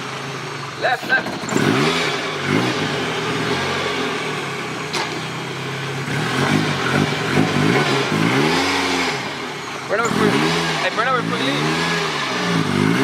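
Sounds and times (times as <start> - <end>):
car engine revving: 0.0 - 13.0.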